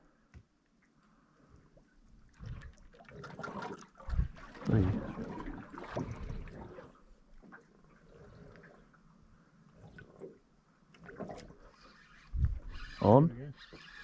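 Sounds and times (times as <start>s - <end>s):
water splashing against boat: 2.3s - 8.9s.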